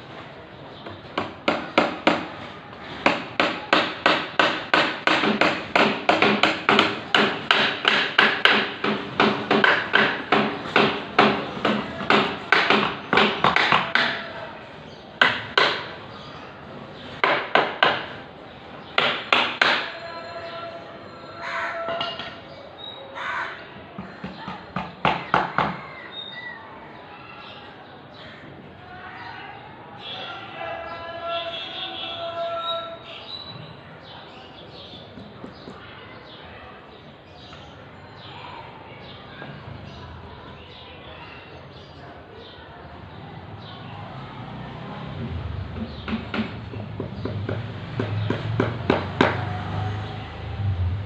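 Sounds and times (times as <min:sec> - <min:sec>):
hammer striking: 0:03.0 - 0:14.3, 0:19.0 - 0:20.0.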